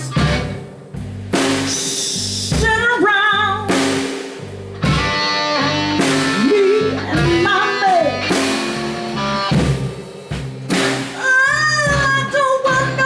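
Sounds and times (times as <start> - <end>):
bending lead guitar line: 0.0 - 0.7, 4.7 - 9.9, 10.7 - 13.0
electric guitar: 0.0 - 0.8, 4.7 - 13.0
bass guitar: 0.0 - 13.0
drum kit: 0.0 - 13.0.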